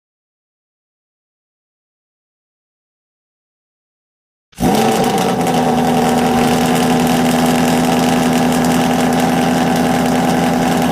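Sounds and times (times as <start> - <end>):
car engine idling: 4.6 - 10.9.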